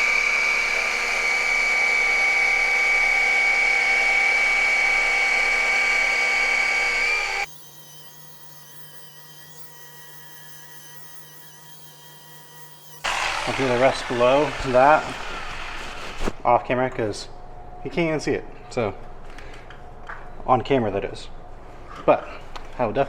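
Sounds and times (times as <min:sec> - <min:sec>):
glass grinder whining: 0:00.0 - 0:16.4.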